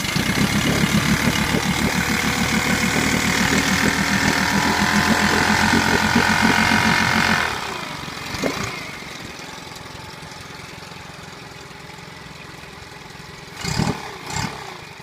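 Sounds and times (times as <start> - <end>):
outboard motor idling: 0.0 - 13.7
motor knocking: 0.1 - 7.6.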